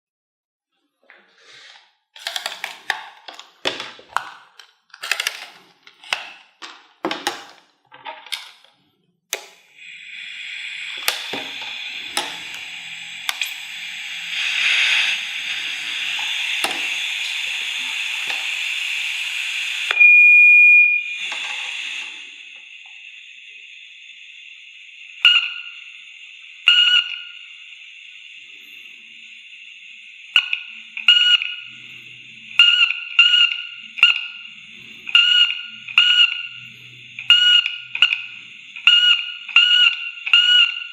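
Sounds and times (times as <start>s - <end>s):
high static hiss: 9.3s - 20.0s, 20.8s - 39.6s
radio crackles: 9.6s - 20.1s
high beep: 19.9s - 22.2s, 25.2s - 25.9s, 26.7s - 27.5s, 30.4s - 40.9s
scattered clicks: 30.3s - 40.8s.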